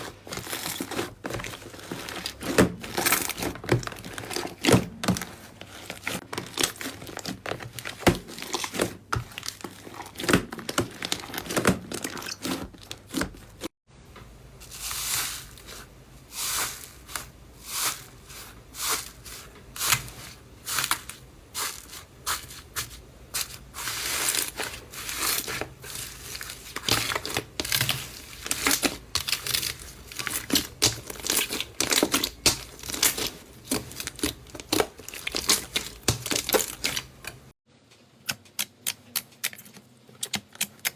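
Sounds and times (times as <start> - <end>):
slime crackling and popping: 23.4 - 37.5.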